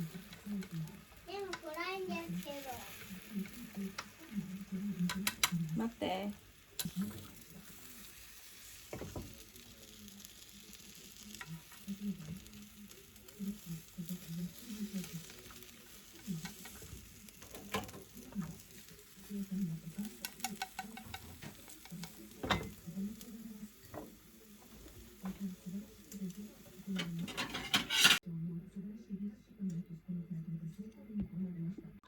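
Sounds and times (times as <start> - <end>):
utensil clicking against pan: 0.0 - 1.7, 2.9 - 5.8, 6.8 - 7.8, 11.3 - 23.3
food sizzling in frying pan: 0.0 - 28.2.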